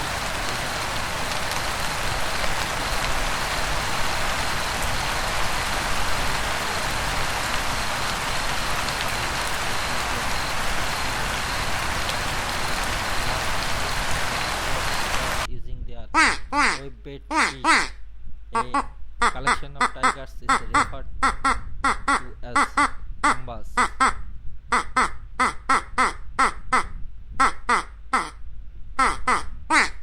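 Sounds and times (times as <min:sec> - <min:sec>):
steady rain-like hiss: 0:00.0 - 0:15.6.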